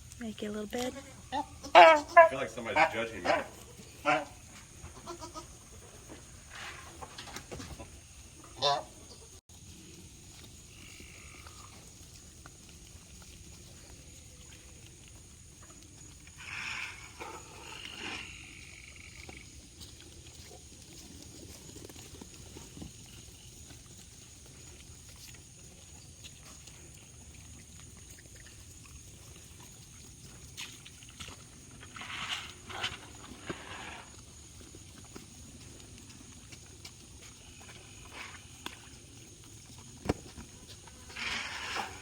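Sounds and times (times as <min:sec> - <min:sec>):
farm animal calls: 0:00.8 - 0:09.4, 0:10.6 - 0:12.2, 0:13.2 - 0:20.9.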